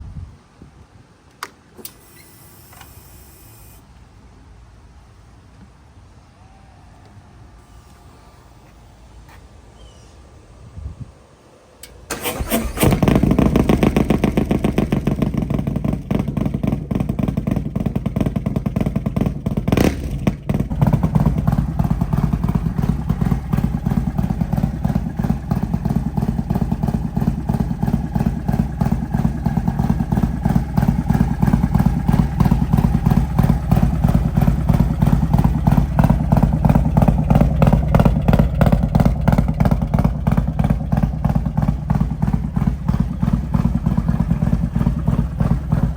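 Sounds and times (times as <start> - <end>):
motorcycle engine idling: 7.6 - 45.9
exhaust crack: 10.4 - 45.9.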